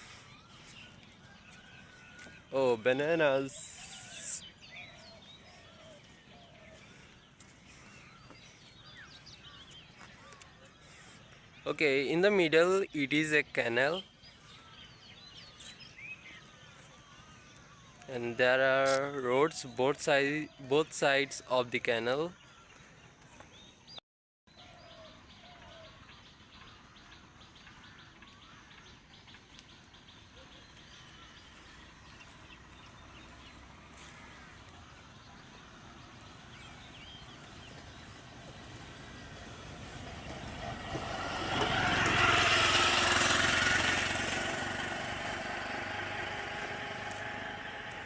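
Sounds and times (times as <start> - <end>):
faint bird chirps: 0.0 - 13.2
motor vehicle passing: 26.6 - 48.0.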